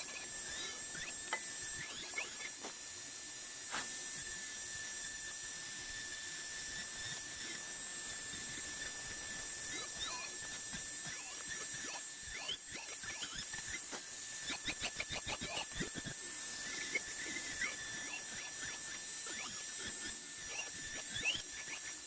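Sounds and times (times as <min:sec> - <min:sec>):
rotary tool whining on wood: 0:00.0 - 0:22.0
squeaky chirps: 0:09.6 - 0:10.4, 0:11.1 - 0:13.8.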